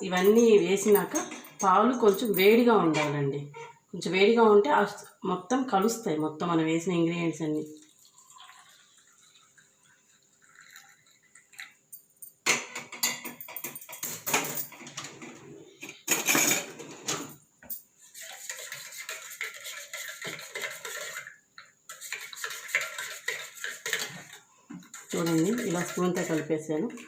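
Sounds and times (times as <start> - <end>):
spoon clinking in a cup: 0.1 - 3.1, 24.9 - 27.0.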